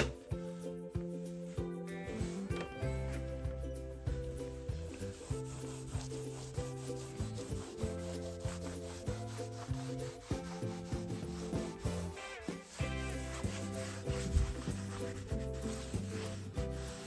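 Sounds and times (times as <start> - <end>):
soft held musical tones: 0.0 - 17.0
cloth rubbing a surface: 3.9 - 17.0.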